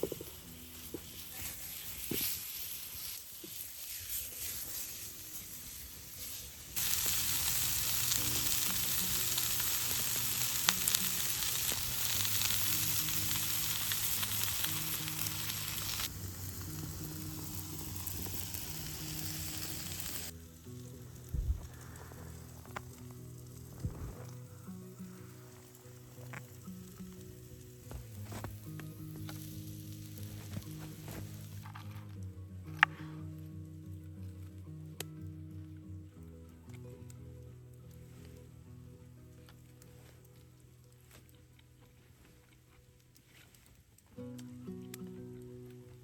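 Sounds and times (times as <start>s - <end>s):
food sizzling and frying: 0.0s - 32.1s.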